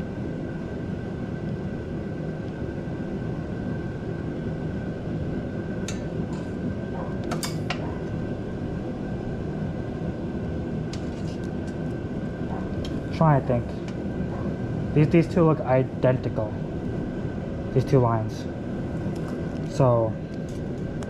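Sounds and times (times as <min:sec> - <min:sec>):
low mechanical noise with whine: 0:00.0 - 0:21.0.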